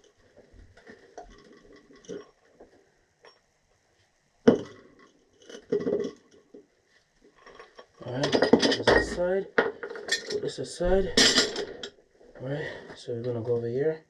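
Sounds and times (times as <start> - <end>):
metal parts clattering: 7.4 - 12.0.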